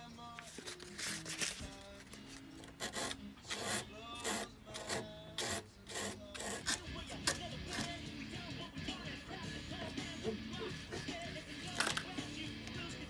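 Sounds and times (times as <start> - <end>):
file rasping on knife: 2.6 - 6.8.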